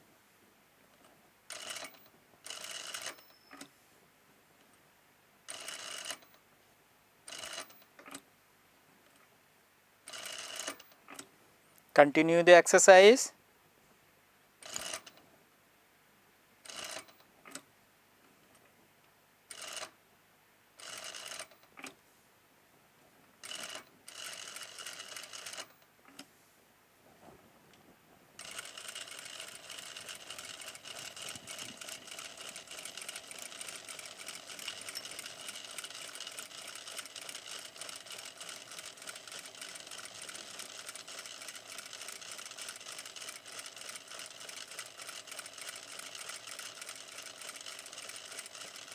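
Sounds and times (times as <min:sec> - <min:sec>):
sewing machine stitching fabric: 0:28.4 - 0:48.9.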